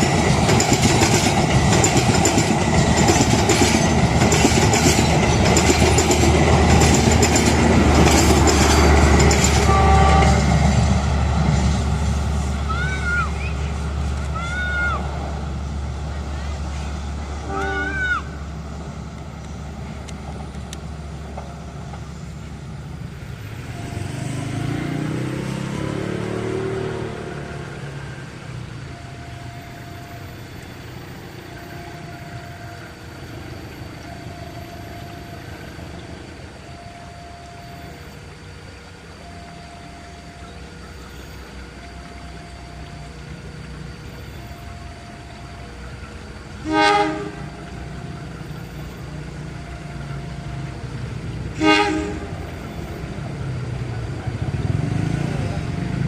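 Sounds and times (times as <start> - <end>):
diesel engine rumbling: 0.0 - 56.0
train horn blast: 8.6 - 10.9, 17.4 - 18.4, 46.5 - 48.4, 51.5 - 53.0
two-note electronic warning signal: 28.8 - 51.2.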